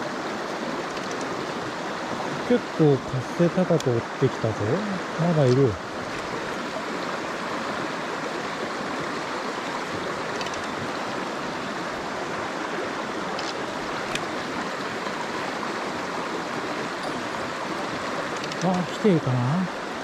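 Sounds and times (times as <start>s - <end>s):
stream flowing: 0.0s - 20.0s
faint clicks: 0.8s - 1.3s, 10.3s - 10.8s, 17.0s - 18.9s.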